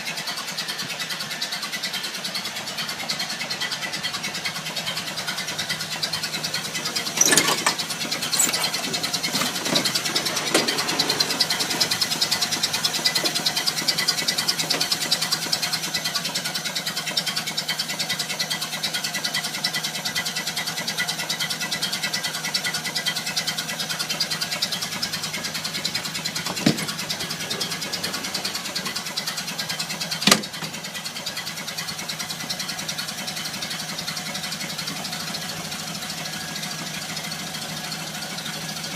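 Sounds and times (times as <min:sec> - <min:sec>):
car engine running: 0:00.7 - 0:38.9.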